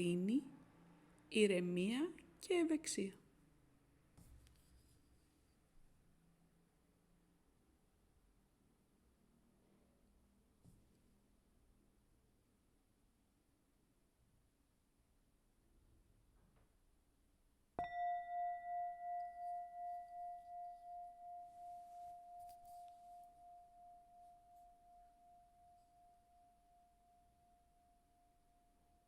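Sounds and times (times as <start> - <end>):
meditation bell ringing: 17.8 - 29.0.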